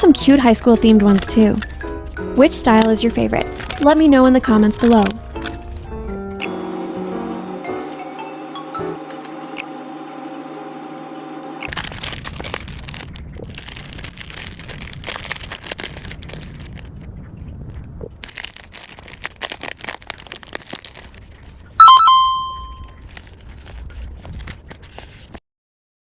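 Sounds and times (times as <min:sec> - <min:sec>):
packaging crinkling and rustling: 0:00.0 - 0:07.5, 0:11.7 - 0:17.1, 0:18.2 - 0:21.8, 0:22.4 - 0:25.4
bell-like chime: 0:21.8 - 0:22.8.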